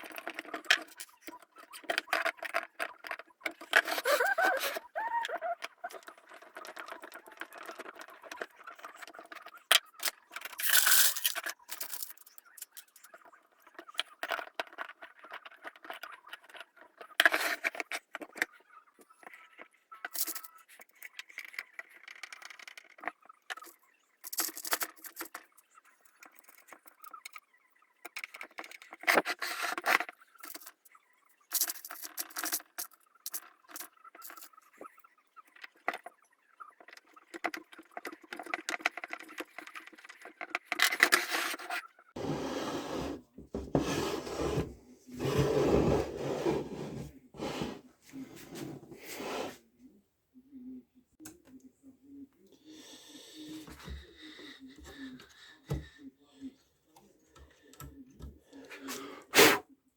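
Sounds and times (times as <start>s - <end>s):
scraping and rattling objects: 40.7s - 49.6s.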